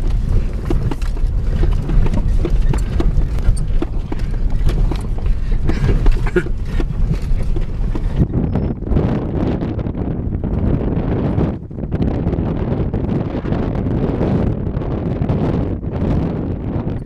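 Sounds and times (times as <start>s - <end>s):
vehicle knocks and rattles: 0.0s - 11.6s
vehicle rumbling on rough road: 0.0s - 17.0s.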